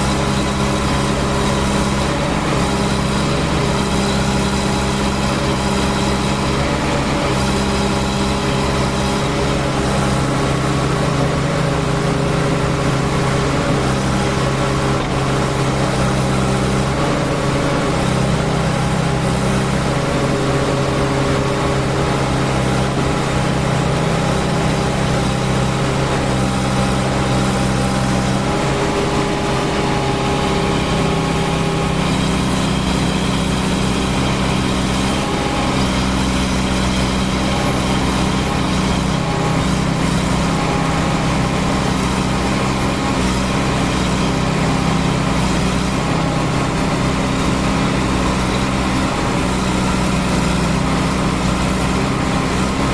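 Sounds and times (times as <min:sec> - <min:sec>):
diesel engine running: 0:00.0 - 0:52.9.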